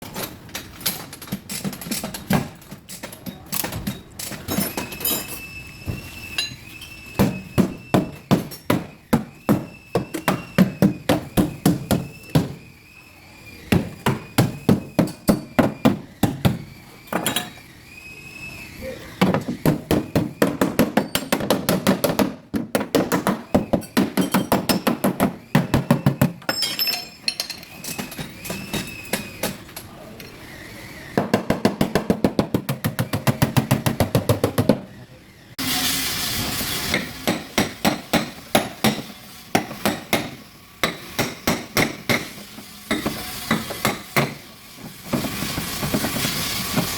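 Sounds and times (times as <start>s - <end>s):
metallic ringing: 26.5s - 28.2s.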